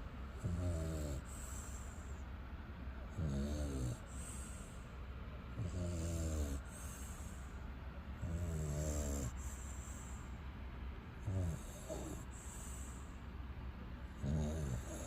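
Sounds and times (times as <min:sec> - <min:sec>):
dog snoring loudly: 0:00.4 - 0:02.0, 0:03.1 - 0:04.8, 0:05.5 - 0:07.4, 0:08.2 - 0:10.2, 0:11.2 - 0:13.0, 0:14.1 - 0:15.0.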